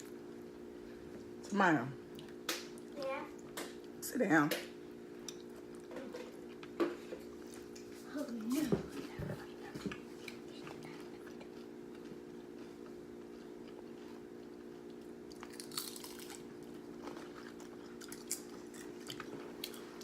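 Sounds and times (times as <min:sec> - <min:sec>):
steady low hum: 0:00.0 - 0:20.0
crunching chips: 0:15.3 - 0:20.0.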